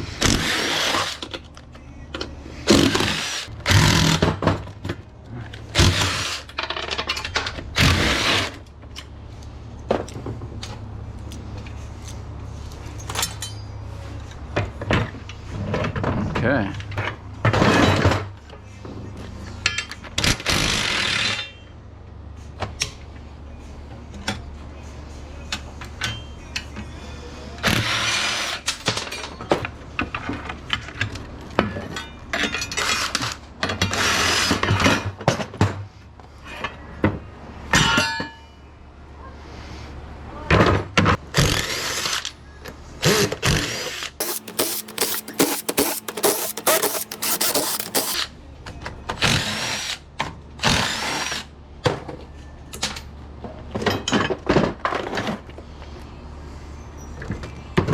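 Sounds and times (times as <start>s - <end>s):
metal parts clanking and scraping: 44.2s - 48.2s.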